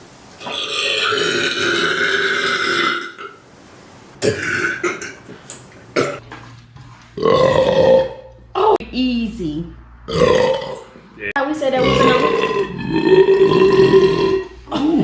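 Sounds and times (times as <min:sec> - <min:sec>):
man burping: 0:00.4 - 0:03.4, 0:04.2 - 0:05.3, 0:06.0 - 0:06.2, 0:10.1 - 0:10.9, 0:11.8 - 0:14.6.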